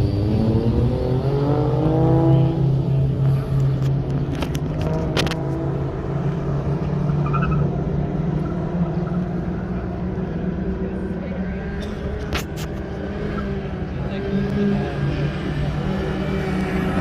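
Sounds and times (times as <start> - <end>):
car engine revving and idling: 0.0 - 17.0.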